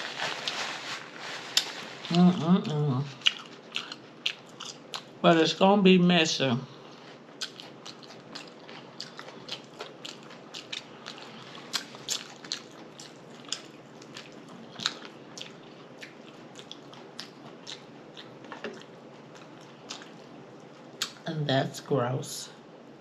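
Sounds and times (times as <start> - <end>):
chewing and lip smacking: 3.1 - 5.2, 6.8 - 21.2.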